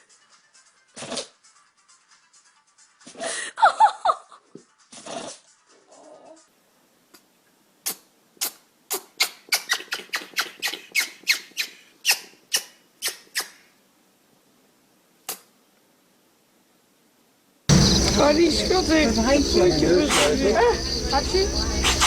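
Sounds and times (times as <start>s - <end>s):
small pet sneezing: 1.0s - 1.4s, 4.9s - 5.4s.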